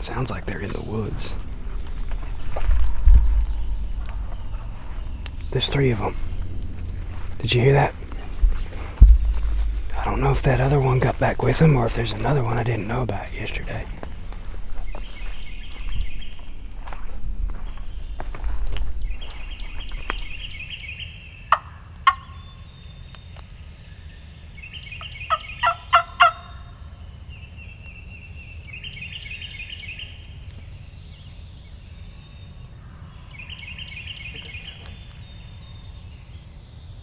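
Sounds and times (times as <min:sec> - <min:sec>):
turkeys gobbling: 0:00.0 - 0:15.9, 0:21.5 - 0:22.4, 0:25.3 - 0:26.6.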